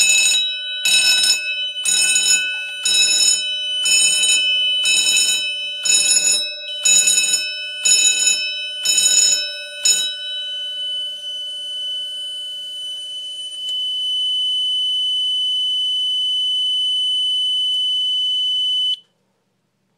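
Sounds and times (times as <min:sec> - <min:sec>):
steady high-pitched buzzer: 0:00.0 - 0:13.6
pulsing fire alarm signal: 0:00.0 - 0:19.0.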